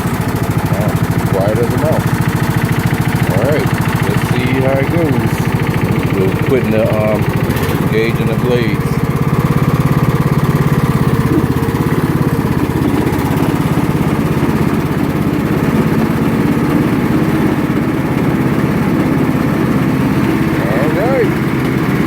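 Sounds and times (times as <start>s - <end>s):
lawn tractor engine running: 0.0s - 22.0s.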